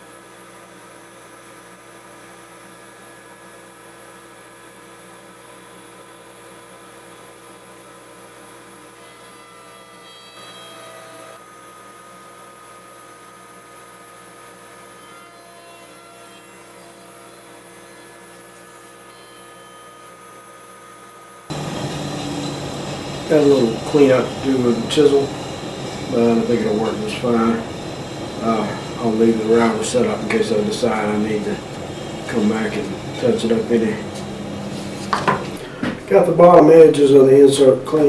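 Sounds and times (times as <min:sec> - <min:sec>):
electric router whining: 0:21.5 - 0:38.0.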